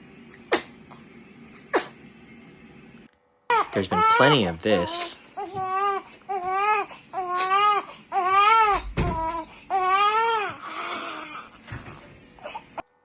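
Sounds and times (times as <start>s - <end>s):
newborn baby crying: 3.5s - 11.6s
baby fussing: 3.8s - 5.2s.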